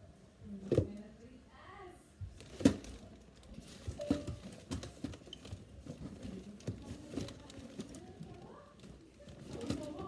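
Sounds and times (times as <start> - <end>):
objects knocking and clicking: 2.4 - 10.0.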